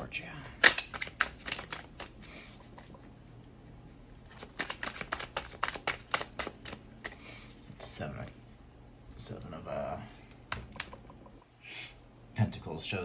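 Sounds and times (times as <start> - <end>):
cards being shuffled: 0.4 - 3.2, 4.1 - 8.4.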